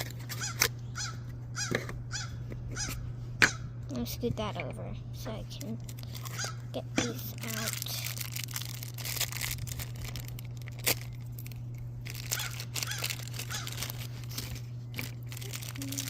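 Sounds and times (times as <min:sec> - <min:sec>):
packaging crinkling and tearing: 0:00.0 - 0:00.7, 0:05.8 - 0:16.0
steady low hum: 0:00.0 - 0:16.0.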